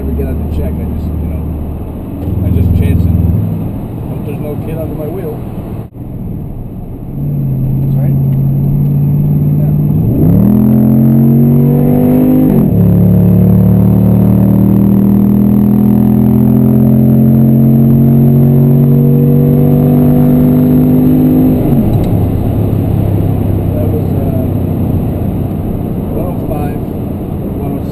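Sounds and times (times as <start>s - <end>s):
car engine accelerating hard: 0.0s - 27.9s.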